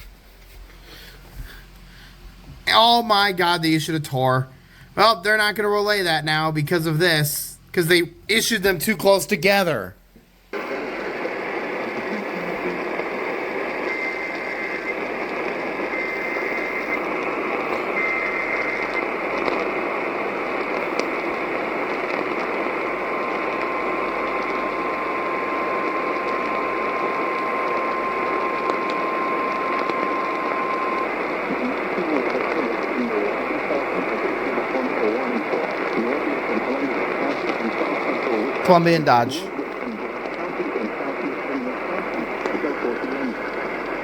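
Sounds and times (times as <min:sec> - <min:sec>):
radio static hiss: 0:00.0 - 0:44.0
data tone bursts: 0:10.7 - 0:44.0.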